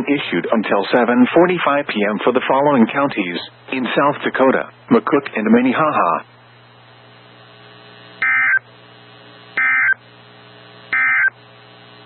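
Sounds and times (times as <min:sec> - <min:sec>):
weather radio low hum: 0:00.0 - 0:12.0
digital data tone bursts: 0:08.2 - 0:08.6, 0:09.6 - 0:10.0, 0:10.9 - 0:11.3.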